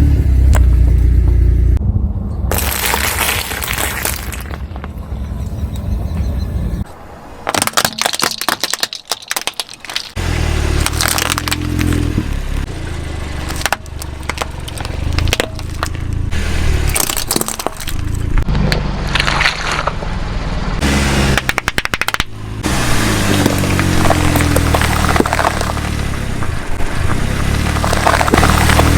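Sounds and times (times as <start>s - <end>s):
low rumble: 0.0s - 7.0s
tyre crushing brittle objects: 2.5s - 4.9s, 7.5s - 20.1s, 21.3s - 22.3s, 23.0s - 28.9s.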